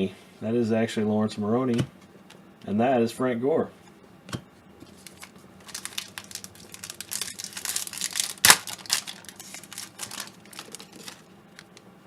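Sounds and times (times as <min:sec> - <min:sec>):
card pack wrapper crinkling: 0:04.8 - 0:11.8
wrapper ripping: 0:05.0 - 0:11.8.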